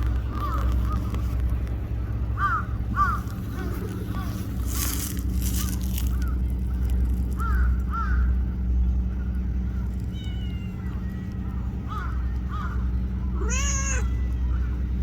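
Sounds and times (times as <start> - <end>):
cat meowing: 10.1 - 10.8, 13.4 - 14.4.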